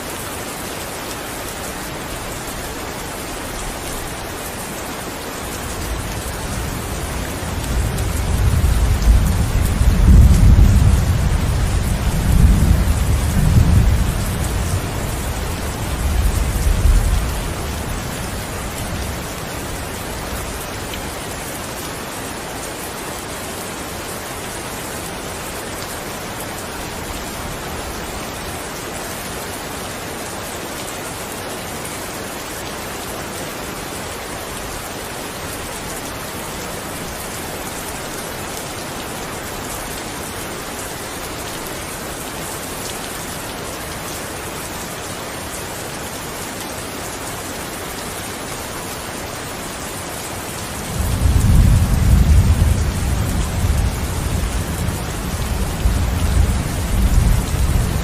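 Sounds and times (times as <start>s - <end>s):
steady rain falling: 0.0s - 58.0s
deep rumble of thunder: 7.7s - 15.4s, 50.9s - 58.0s.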